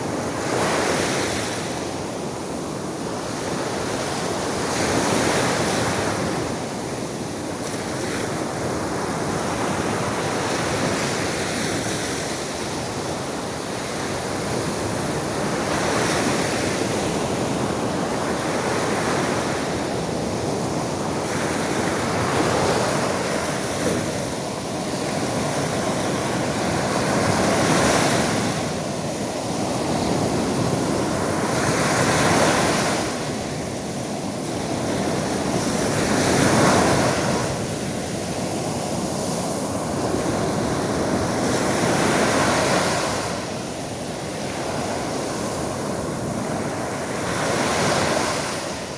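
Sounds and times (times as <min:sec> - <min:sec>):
sea waves washing onto shore: 0:00.0 - 0:48.9.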